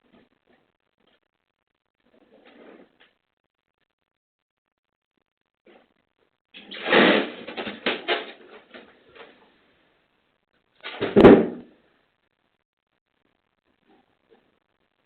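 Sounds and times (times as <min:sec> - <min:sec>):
door slamming shut: 0:06.6 - 0:08.3, 0:10.9 - 0:11.6
door rattling and knocking: 0:06.7 - 0:08.7, 0:10.9 - 0:11.6.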